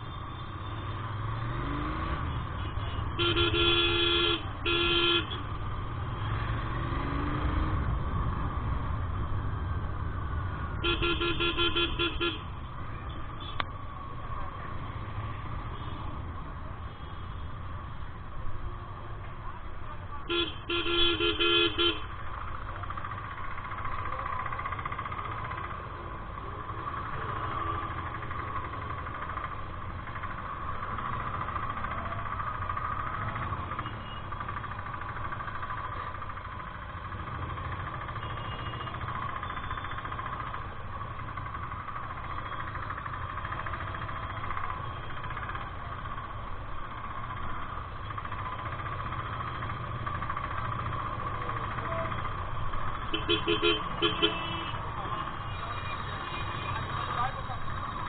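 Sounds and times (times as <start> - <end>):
road noise: 0.0 - 58.0
motorcycle engine running: 0.6 - 58.0
vehicle horn: 2.7 - 5.4, 10.8 - 12.4, 20.3 - 22.1, 53.1 - 54.8.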